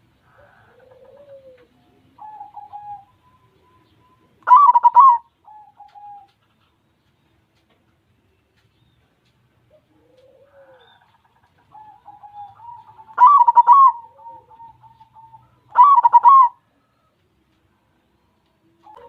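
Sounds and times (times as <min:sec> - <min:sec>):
dove cooing: 0:00.0 - 0:06.5, 0:09.7 - 0:17.2, 0:18.8 - 0:19.0.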